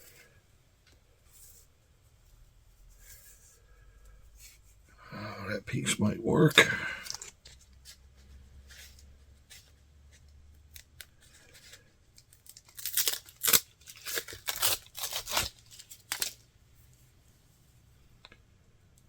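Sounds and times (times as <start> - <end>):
dried sinew ripping: 12.4 - 16.4.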